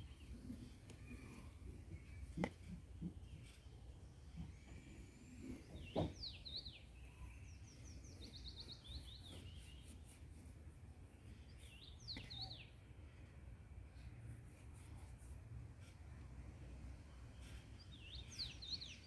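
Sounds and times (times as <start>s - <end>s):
songbird singing: 17.8s - 19.0s.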